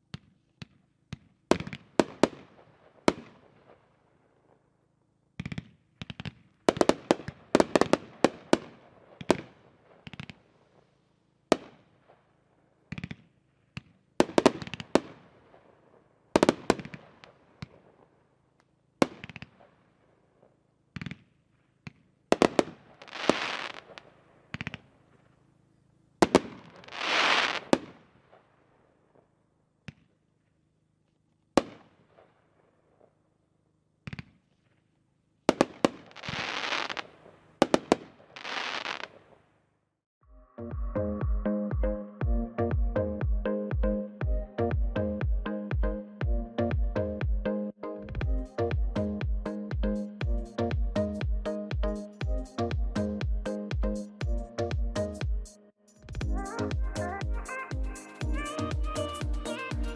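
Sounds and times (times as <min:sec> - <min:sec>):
firework bangs: 0:06.2 - 0:10.4, 0:22.4 - 0:24.8, 0:35.5 - 0:39.4.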